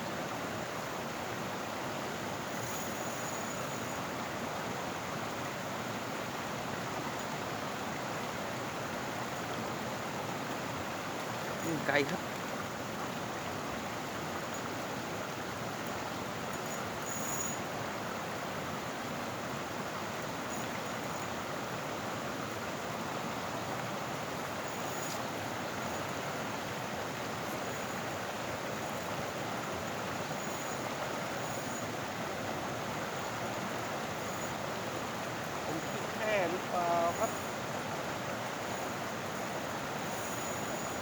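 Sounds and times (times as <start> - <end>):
river water rushing: 0.0 - 41.0.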